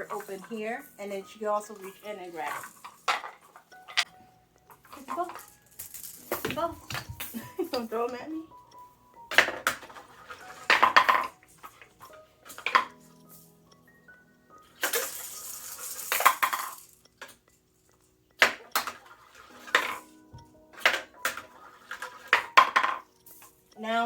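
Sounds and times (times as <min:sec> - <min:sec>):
toy balls clacking on wooden box: 0:00.0 - 0:08.5, 0:09.2 - 0:13.9, 0:14.7 - 0:24.0
faint background music: 0:00.0 - 0:24.0.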